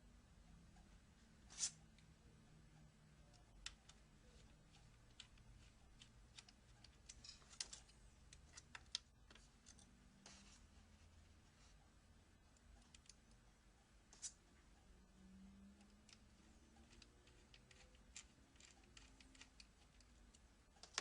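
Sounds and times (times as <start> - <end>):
small clicks and taps on metal: 3.3 - 9.9, 15.8 - 21.0.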